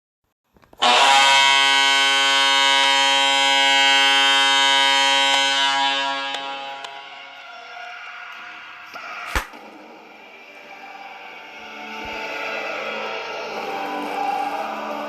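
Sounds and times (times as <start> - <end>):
arena goal horn blast: 0.8 - 7.8.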